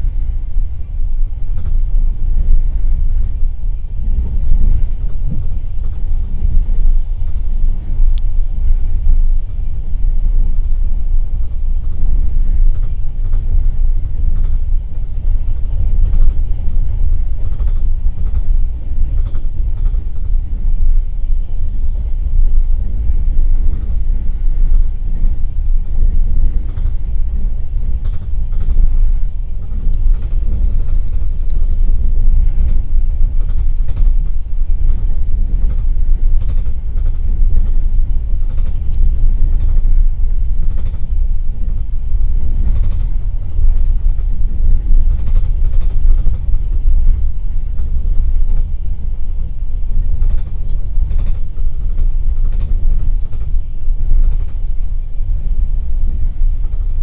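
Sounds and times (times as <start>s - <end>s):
train wheels rumbling: 0.0s - 57.0s
carriage body creaks and clicks: 12.6s - 14.8s, 17.3s - 20.4s, 28.0s - 40.0s, 40.6s - 41.6s, 42.6s - 55.3s.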